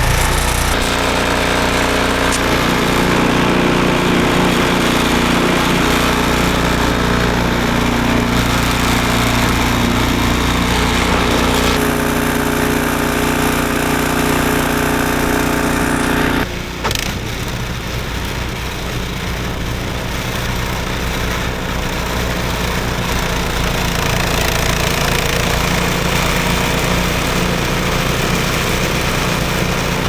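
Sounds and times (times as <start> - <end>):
snowblower engine running: 0.0 - 30.0.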